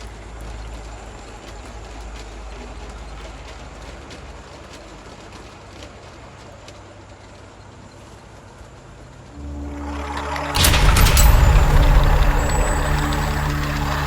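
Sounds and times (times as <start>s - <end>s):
low hum: 9.3s - 14.0s
model train rumbling on track: 9.4s - 14.0s.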